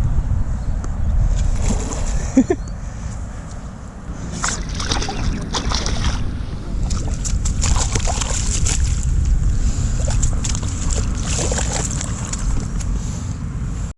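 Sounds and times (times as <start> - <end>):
wind rumble on microphone: 0.0 - 13.9
water splashing and sloshing: 1.3 - 2.6, 4.1 - 13.2.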